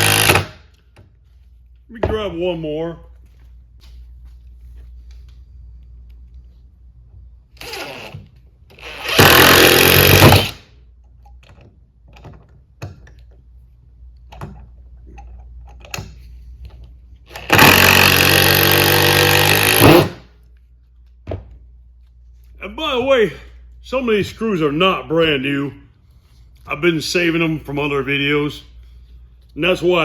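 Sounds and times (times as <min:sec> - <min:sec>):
weak drill whir: 0:00.0 - 0:00.6, 0:07.6 - 0:10.6, 0:17.3 - 0:20.2
impact driver driving screws: 0:00.0 - 0:00.7, 0:07.6 - 0:10.6, 0:17.3 - 0:20.2.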